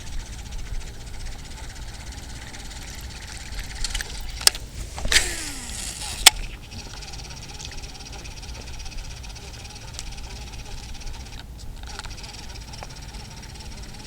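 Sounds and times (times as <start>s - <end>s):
line swishing with spool whine: 0.0s - 14.0s
fishing reel clicking: 2.4s - 8.2s.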